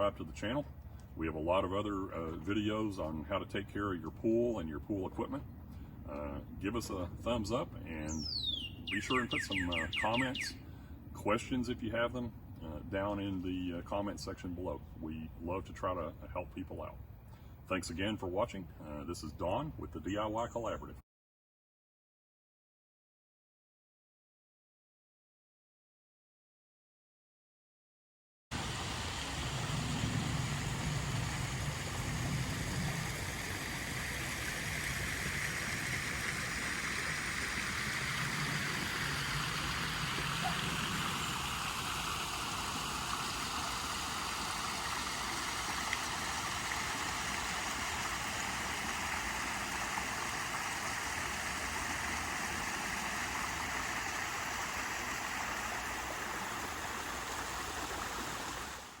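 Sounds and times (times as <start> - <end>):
water rushing and splashing: 28.5 - 59.0.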